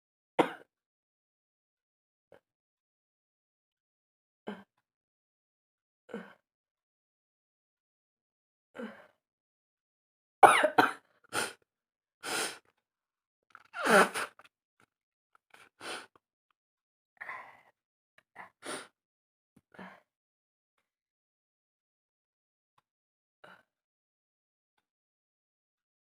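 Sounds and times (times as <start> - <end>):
sniffs and sharp breaths: 12.2 - 12.7, 15.5 - 16.1.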